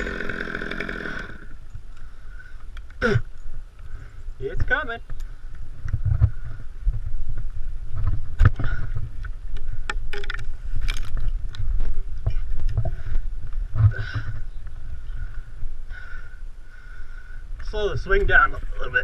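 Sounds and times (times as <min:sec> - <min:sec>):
wind buffeting microphone: 0:03.5 - 0:19.0
tree limb knocking and creaking: 0:05.0 - 0:14.8.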